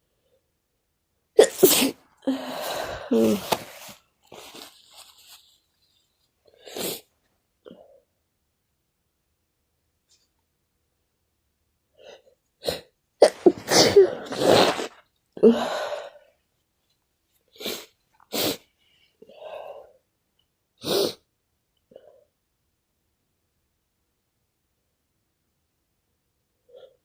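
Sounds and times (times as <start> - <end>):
person sneezing: 1.4 - 3.9, 12.6 - 15.6
person sniffling: 1.4 - 4.8, 12.0 - 16.2.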